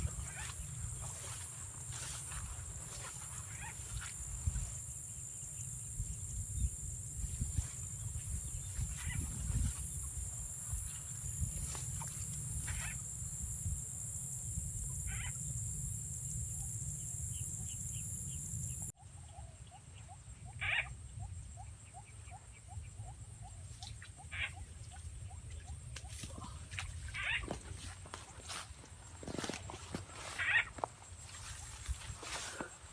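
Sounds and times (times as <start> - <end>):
frog calls: 0.0 - 4.7, 7.5 - 11.0, 11.6 - 13.1, 14.9 - 15.5, 20.0 - 21.0, 23.8 - 32.9
insects chirring: 0.0 - 18.9, 23.8 - 32.9.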